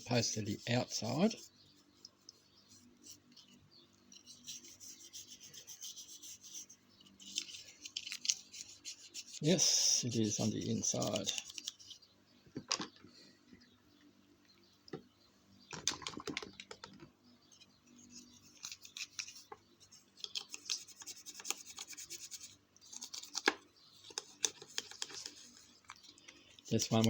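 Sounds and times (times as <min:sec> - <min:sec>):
scratchy rubbing on plastic: 0:00.4 - 0:12.1, 0:17.9 - 0:26.1.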